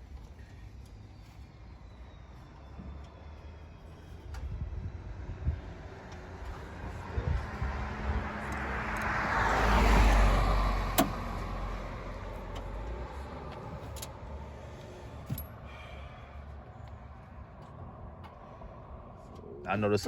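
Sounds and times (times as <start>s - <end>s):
car driving past: 4.8s - 19.7s.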